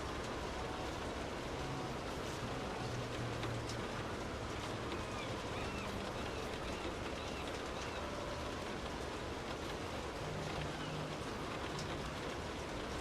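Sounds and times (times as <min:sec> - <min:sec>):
steady rain falling: 0:00.0 - 0:13.0
faint bird calls: 0:04.9 - 0:08.4.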